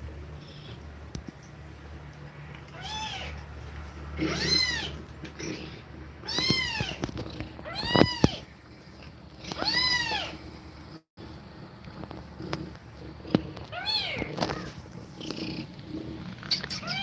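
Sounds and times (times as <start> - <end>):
cat meowing: 2.7 - 3.4, 4.2 - 5.0, 6.2 - 7.0, 7.6 - 8.4, 9.6 - 10.4, 13.7 - 14.7, 16.8 - 17.0.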